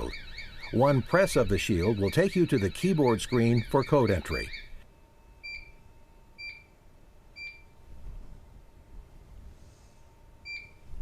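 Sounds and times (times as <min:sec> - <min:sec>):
keypad beeps: 0:05.4 - 0:05.8, 0:06.4 - 0:06.7, 0:07.4 - 0:07.7, 0:10.5 - 0:10.8.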